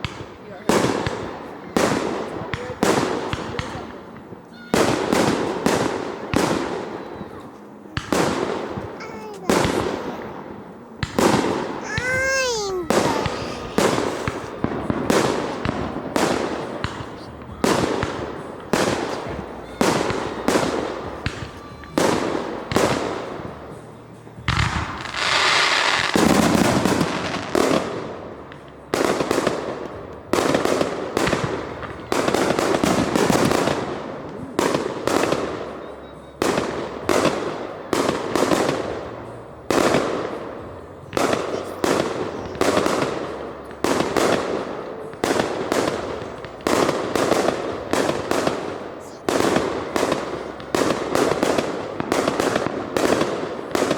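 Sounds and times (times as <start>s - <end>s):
fireworks bangs: 0.0s - 53.9s.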